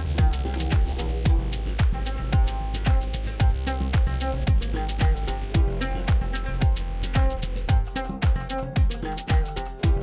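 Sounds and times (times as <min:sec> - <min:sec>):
music with steady drum beat: 0:00.0 - 0:10.0.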